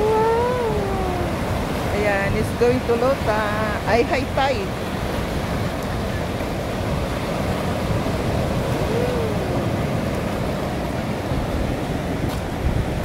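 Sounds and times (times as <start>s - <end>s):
ocean waves on the shore: 0.0s - 13.0s.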